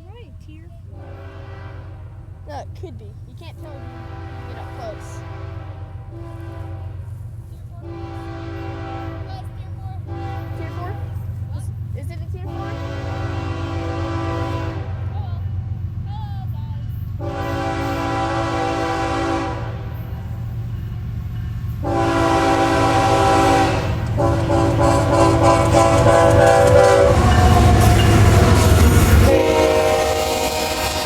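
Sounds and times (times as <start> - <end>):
diesel engine rumble: 0.0 - 17.4
wheels on rail: 0.0 - 31.0
locomotive air horn blasts: 0.9 - 2.5, 3.7 - 11.4, 12.4 - 15.4, 17.2 - 20.5, 21.8 - 31.0.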